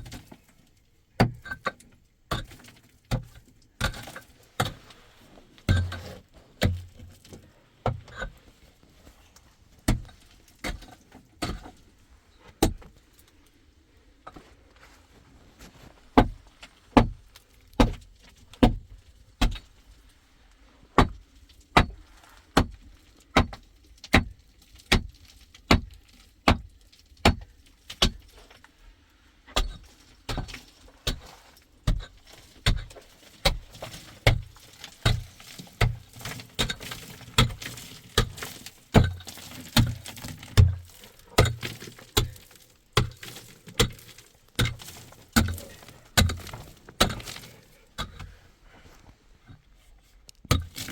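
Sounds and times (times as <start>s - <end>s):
metal tool striking rock: 5.7s - 6.9s, 32.6s - 48.3s, 50.5s - 50.9s.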